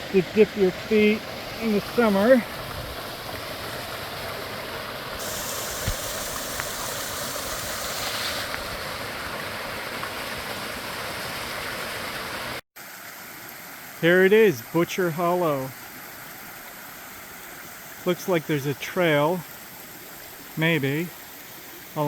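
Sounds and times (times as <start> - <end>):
stream water rushing: 0.0 - 22.0.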